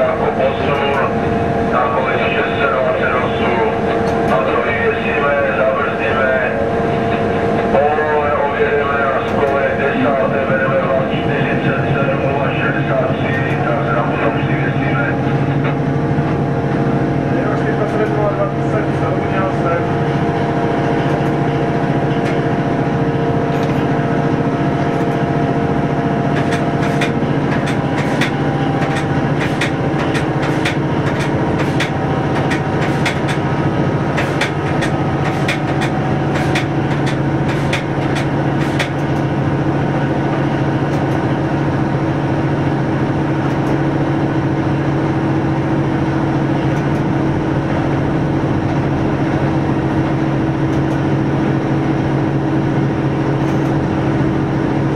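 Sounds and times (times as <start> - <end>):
train engine and running noise: 0.0 - 54.9
sharp irregular clicks: 26.3 - 33.4, 34.1 - 39.3.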